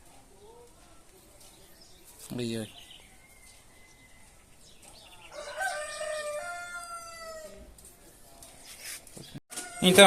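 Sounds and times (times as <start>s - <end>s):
rooster crowing: 5.3s - 7.7s.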